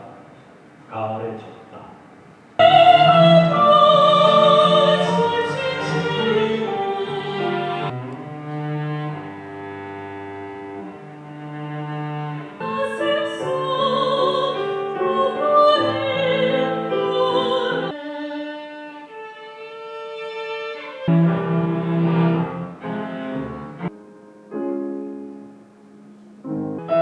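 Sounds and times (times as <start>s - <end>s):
cello and strings playing: 2.6s - 24.0s.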